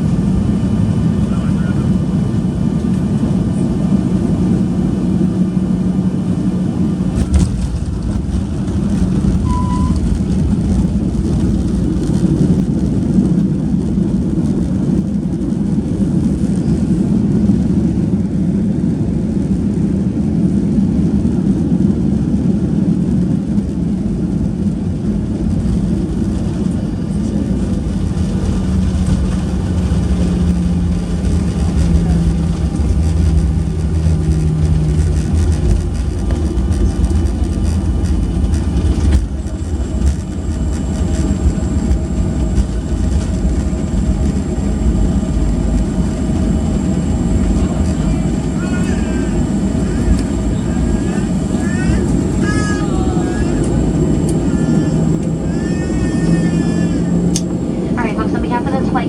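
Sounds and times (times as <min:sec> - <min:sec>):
jet engine rumble in cabin: 0:00.0 - 0:59.0
steady hum: 0:23.9 - 0:59.0.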